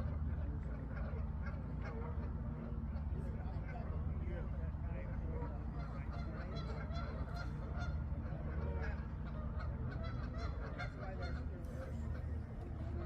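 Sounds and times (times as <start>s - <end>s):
steady low rumble: 0.0s - 13.0s
geese honking: 4.9s - 13.0s.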